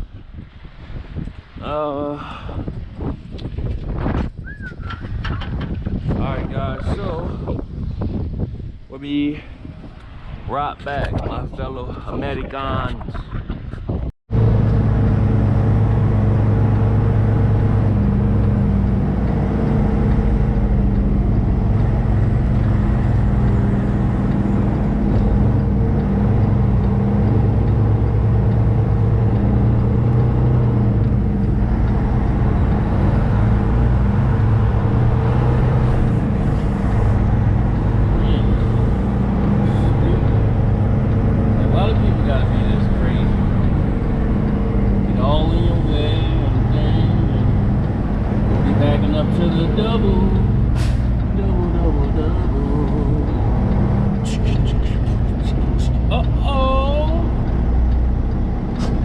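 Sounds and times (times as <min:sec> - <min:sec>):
diesel truck engine drone: 0:13.9 - 0:59.0.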